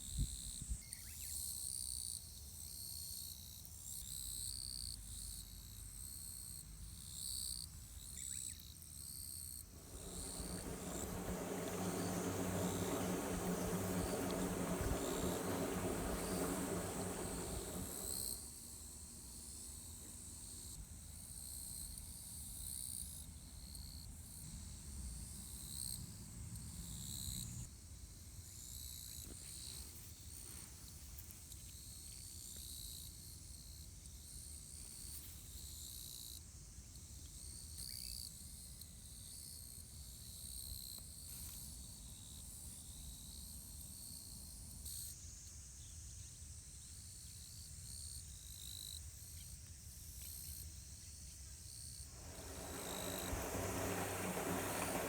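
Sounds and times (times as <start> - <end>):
low hum: 9.7 - 18.4, 52.2 - 55.0
low rumble: 9.8 - 18.3, 52.2 - 55.0
insects chirping: 9.8 - 18.4, 52.2 - 55.0.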